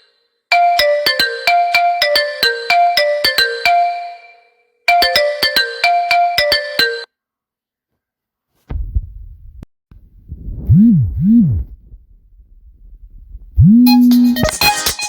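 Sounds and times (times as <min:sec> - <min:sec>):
plucked ringtone melody: 0:00.5 - 0:07.1, 0:13.9 - 0:15.0
ringtone with swooping tones: 0:00.5 - 0:07.1, 0:13.6 - 0:15.0.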